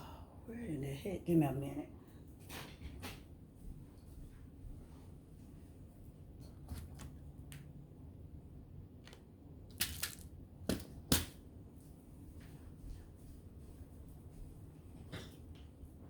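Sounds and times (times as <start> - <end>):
small items clicking and rattling: 9.7 - 10.9.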